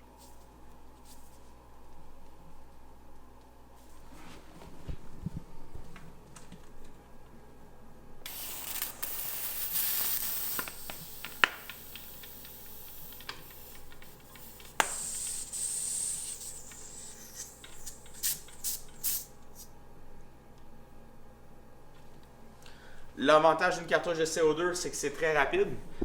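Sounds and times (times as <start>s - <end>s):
gas inflator hissing: 8.3s - 19.7s
inflator clicks and taps: 10.6s - 15.3s.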